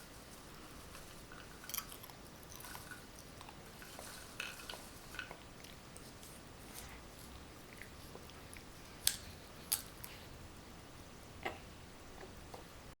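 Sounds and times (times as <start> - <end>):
popcorn crunching while chewed: 1.3 - 6.9.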